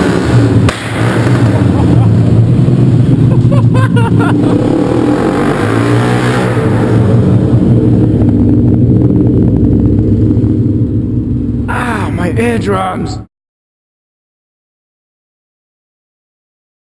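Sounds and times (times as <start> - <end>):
motorcycle engine running in a tunnel: 0.0 - 12.2.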